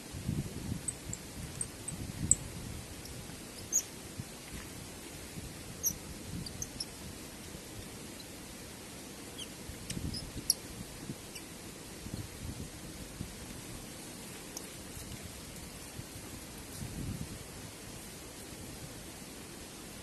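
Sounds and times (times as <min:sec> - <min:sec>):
wind buffeting microphone: 0:00.1 - 0:07.1, 0:16.0 - 0:17.6
high bird chirps: 0:03.6 - 0:03.9.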